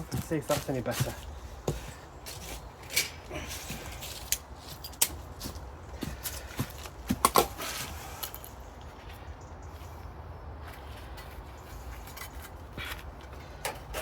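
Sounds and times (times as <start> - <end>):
quiet shuffling: 0.0 - 10.0.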